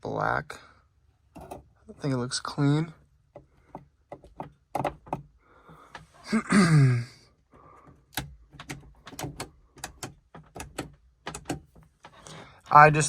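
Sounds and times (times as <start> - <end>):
plastic trim clicks and knocks: 3.3 - 6.0, 8.1 - 12.2.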